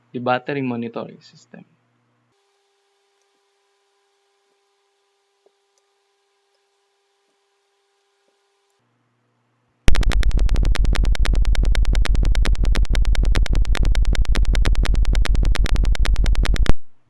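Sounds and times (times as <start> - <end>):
pulsing electronic alarm buzz: 9.9 - 16.8.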